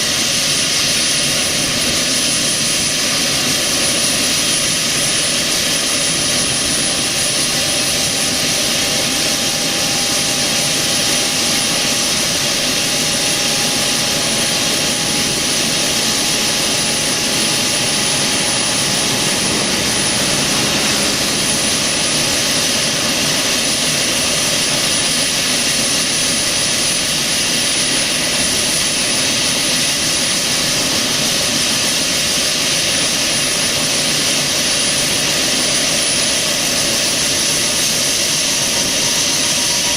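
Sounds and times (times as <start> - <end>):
helicopter turbine whine: 0.0 - 39.9
high steady tone: 11.3 - 24.0.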